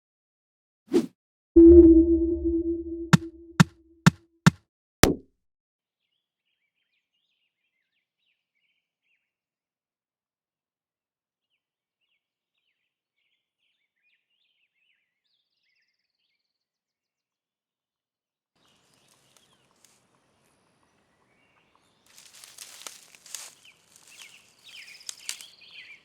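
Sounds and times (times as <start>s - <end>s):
songbirds chirping: 21.4s - 26.0s
crackles and rustles: 22.1s - 25.6s.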